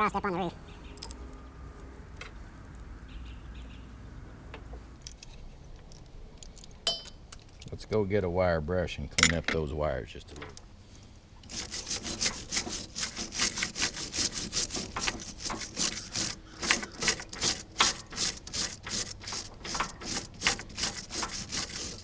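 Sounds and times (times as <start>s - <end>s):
wire brush scrubbing wires: 0.0s - 5.1s, 11.5s - 22.0s.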